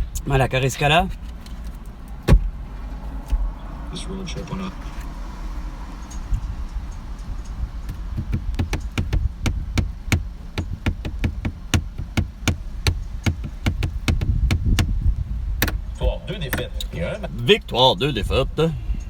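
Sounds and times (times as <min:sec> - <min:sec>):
sharp knocks: 0:02.3 - 0:02.6, 0:07.8 - 0:15.0, 0:15.6 - 0:15.9
low rumble: 0:02.3 - 0:19.0.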